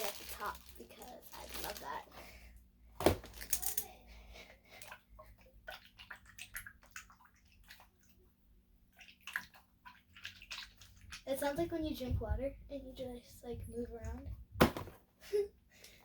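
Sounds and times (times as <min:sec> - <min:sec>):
squishy toy watery squelches: 0:04.7 - 0:12.1.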